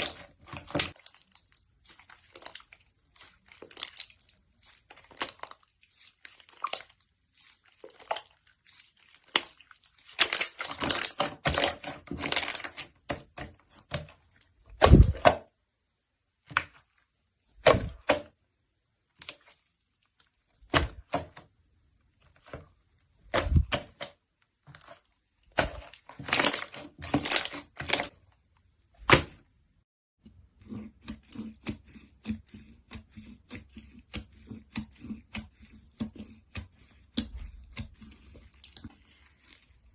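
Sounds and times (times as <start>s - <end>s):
slime crackling and popping: 0.0s - 13.0s
dull thumps of slime: 9.1s - 15.6s, 17.5s - 18.4s, 20.6s - 21.6s, 22.2s - 28.2s, 29.0s - 29.5s.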